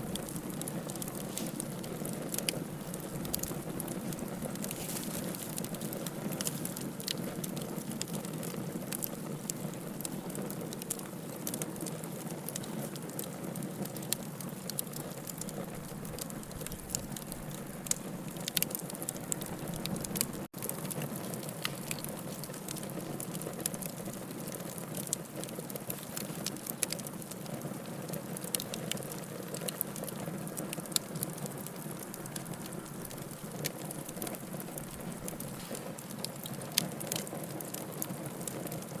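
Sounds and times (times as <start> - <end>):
low rush of flame: 0.0 - 11.6
wood crackling and popping: 0.0 - 39.0.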